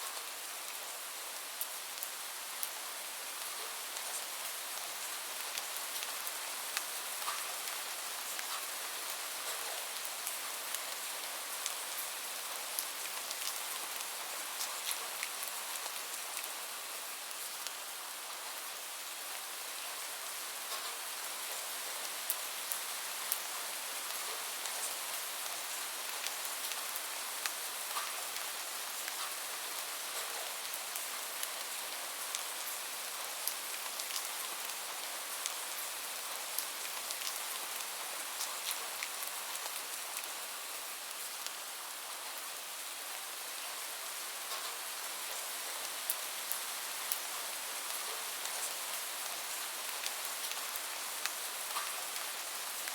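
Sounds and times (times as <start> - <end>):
light rain hissing: 0.0 - 52.9.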